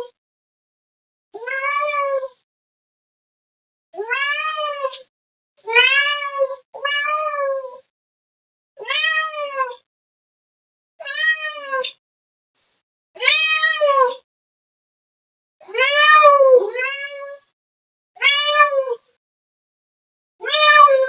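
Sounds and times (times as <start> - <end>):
cat meowing: 1.4 - 2.2, 4.0 - 5.0, 5.7 - 7.8, 8.8 - 9.9, 11.0 - 12.0, 13.2 - 14.2, 15.7 - 17.3, 18.2 - 19.0, 20.4 - 21.0.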